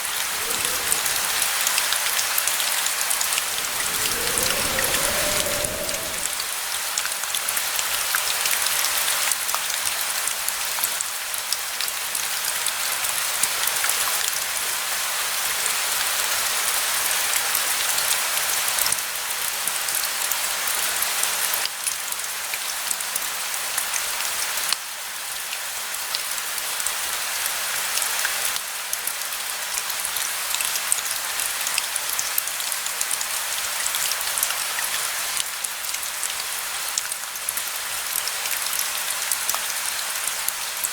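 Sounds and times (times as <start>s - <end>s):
steady rain falling: 0.0s - 6.7s.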